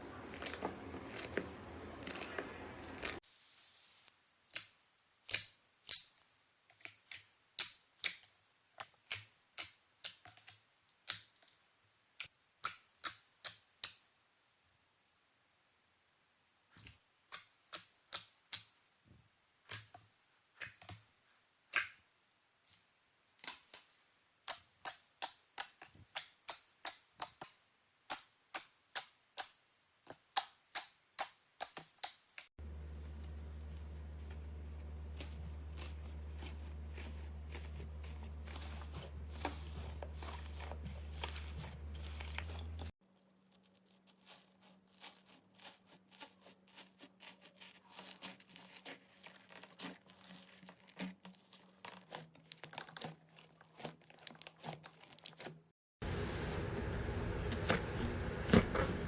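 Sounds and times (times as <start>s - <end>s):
low hum with faint crackling: 0.0s - 3.2s, 32.6s - 55.4s, 56.0s - 59.0s.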